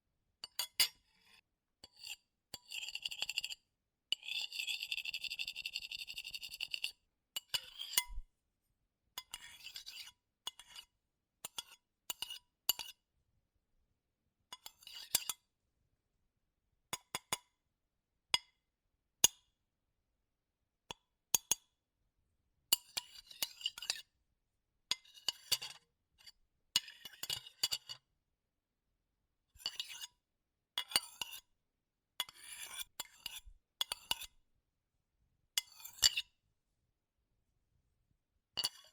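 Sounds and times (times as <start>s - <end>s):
metal spoon scraping ceramic plate: 32.3s - 34.3s, 35.6s - 36.3s.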